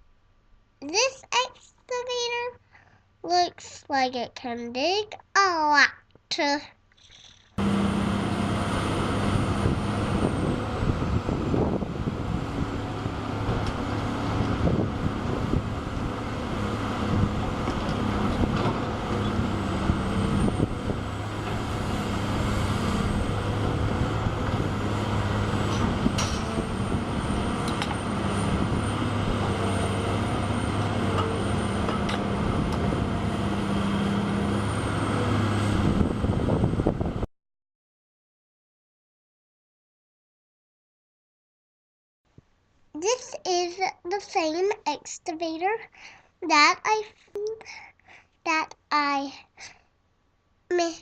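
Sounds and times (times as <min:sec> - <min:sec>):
excavator diesel engine running: 0:07.6 - 0:37.2.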